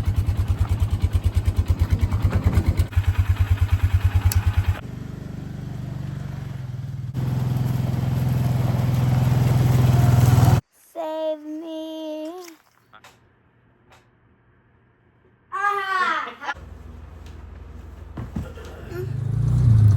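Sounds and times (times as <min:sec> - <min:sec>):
vehicle engine running: 0:00.0 - 0:10.6, 0:16.6 - 0:19.9.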